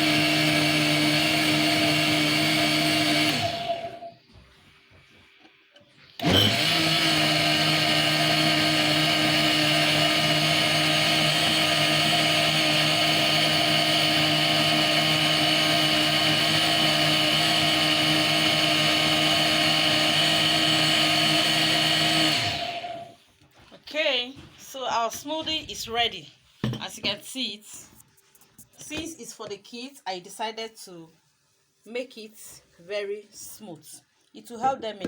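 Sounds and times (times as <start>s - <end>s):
electric blender running: 0.0s - 4.2s, 6.2s - 23.2s.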